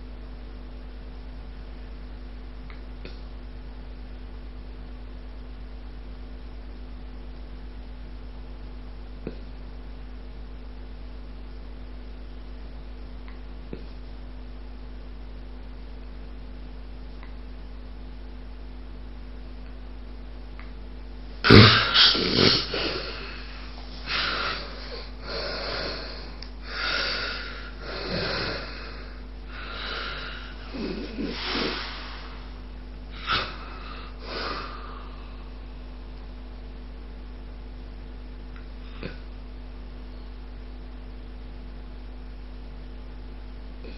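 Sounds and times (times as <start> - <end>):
steady electrical hum: 0.0 - 43.9
loud snort: 21.4 - 32.5, 33.2 - 35.0
quick uneven snoring breaths: 21.5 - 32.5.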